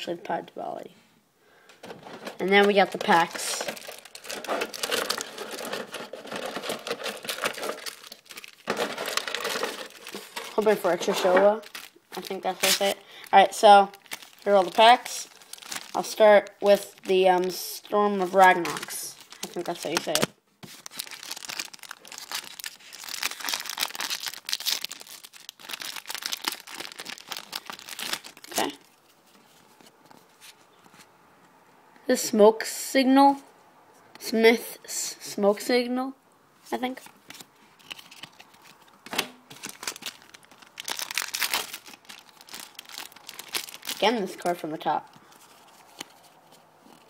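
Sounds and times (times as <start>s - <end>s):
foil wrapper crinkling and tearing: 2.0s - 29.0s, 37.2s - 46.3s.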